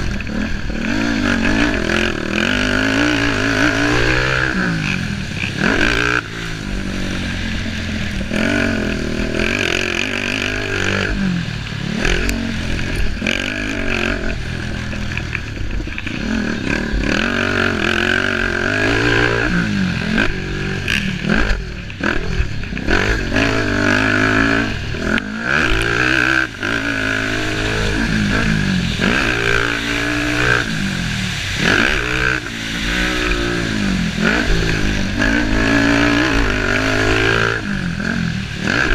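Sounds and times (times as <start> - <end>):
racing engines revving: 0.0 - 38.9.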